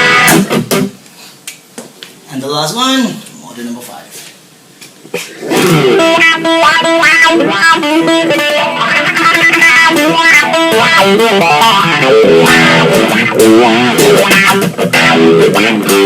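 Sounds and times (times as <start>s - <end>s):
electric guitar with wah pedal: 0.0s - 0.9s, 5.4s - 16.0s.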